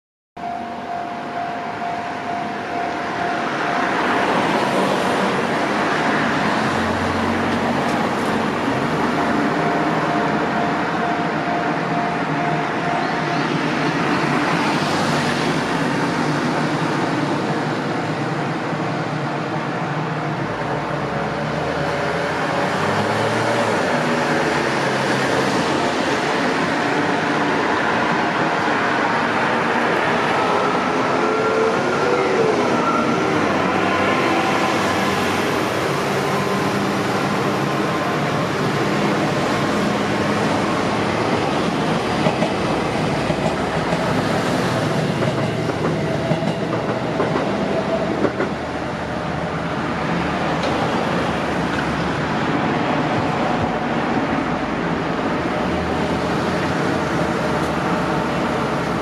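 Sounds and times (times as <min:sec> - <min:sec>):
steady high tone: 0:00.4 - 0:06.5, 0:08.4 - 0:16.3.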